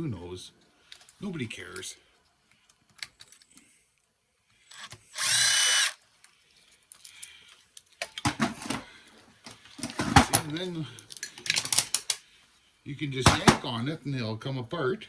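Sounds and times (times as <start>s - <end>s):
power drill whine: 4.7s - 6.0s
parts clicking and rattling: 4.7s - 12.3s, 13.2s - 13.8s.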